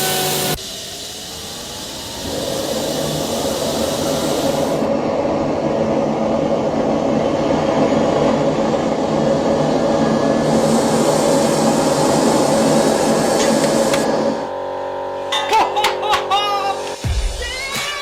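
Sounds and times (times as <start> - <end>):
high hiss: 0.0 - 4.9, 10.2 - 14.3
jet engine rushing noise: 0.0 - 14.4.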